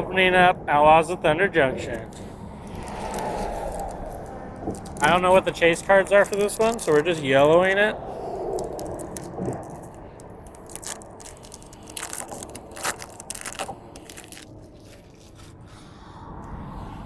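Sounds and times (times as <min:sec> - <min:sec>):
foil wrapper tearing and crinkling: 0:02.7 - 0:15.6.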